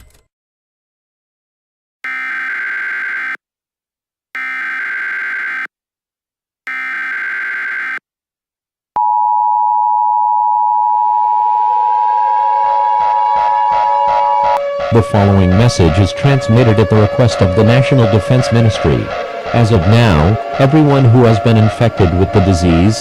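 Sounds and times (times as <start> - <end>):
warbling data bursts: 11.0 - 23.0.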